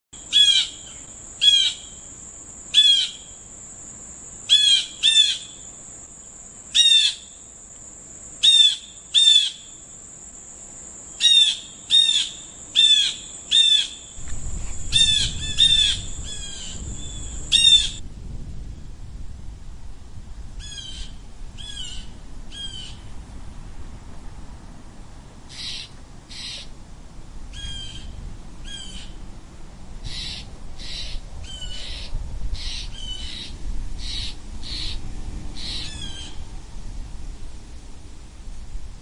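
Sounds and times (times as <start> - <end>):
blue jay harsh calls: 0.2 - 2.0, 2.7 - 3.4, 4.5 - 5.6, 6.7 - 7.4, 8.4 - 9.8, 11.1 - 14.1, 14.8 - 18.0, 20.6 - 23.0, 25.5 - 26.7, 27.5 - 29.2, 30.0 - 35.0, 35.6 - 36.4.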